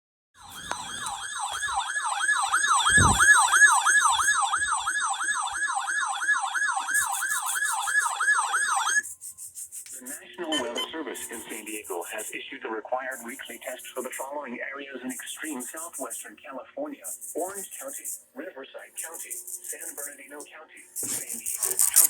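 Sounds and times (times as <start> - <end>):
electronic siren wailing: 0.4 - 9.1, 10.4 - 12.3.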